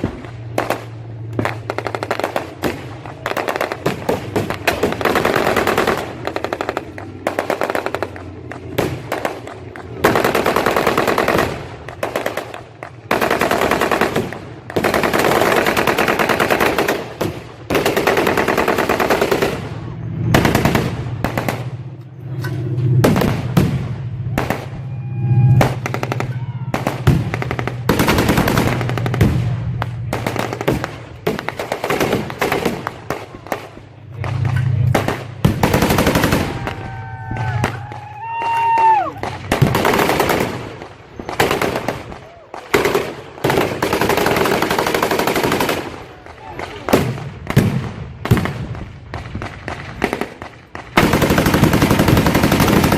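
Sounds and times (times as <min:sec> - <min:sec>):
machine-gun fire bursts: 0:00.0 - 0:21.9, 0:25.6 - 0:36.8, 0:39.2 - 0:52.9
low steady drone: 0:00.0 - 0:31.6, 0:32.2 - 0:38.0.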